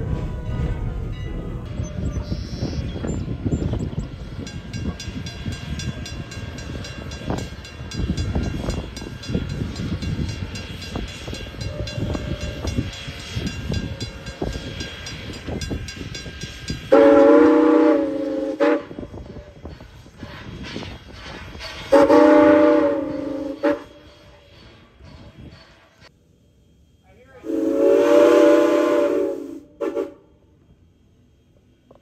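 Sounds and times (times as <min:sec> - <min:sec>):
train rumbling over rail joints: 0:00.0 - 0:32.0
steam whistle blast: 0:16.9 - 0:19.2, 0:21.8 - 0:24.2, 0:27.4 - 0:30.3.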